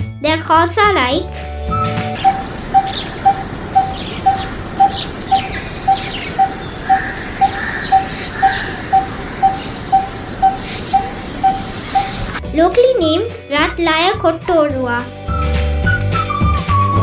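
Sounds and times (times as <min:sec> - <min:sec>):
birds chirping faintly: 0:01.7 - 0:13.4
barbet hollow tuk calls: 0:01.8 - 0:12.4.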